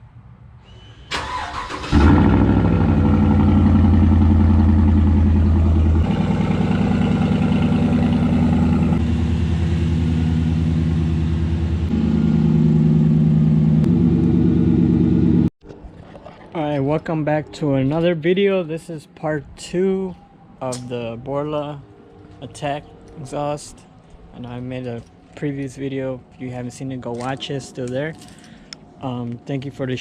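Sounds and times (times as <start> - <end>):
truck exhaust with deep note: 1.9 - 15.5.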